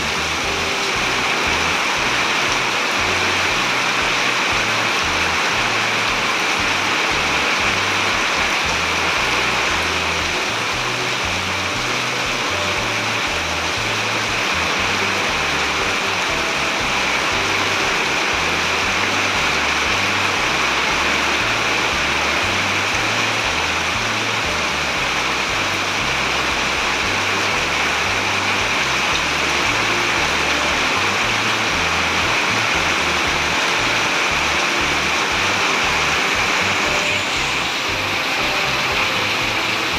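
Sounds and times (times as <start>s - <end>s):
background music bass notes: 0.0s - 39.9s
heavy rain pouring: 0.0s - 39.9s.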